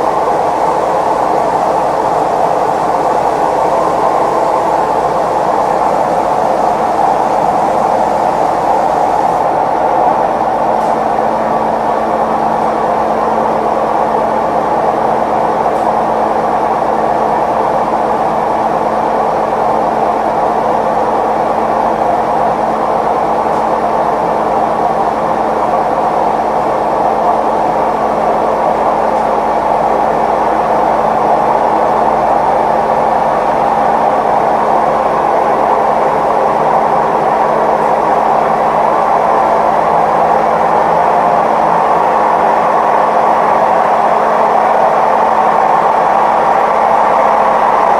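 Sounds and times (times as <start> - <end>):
washing machine spinning: 0.0 - 9.5
constant hum: 0.0 - 10.2.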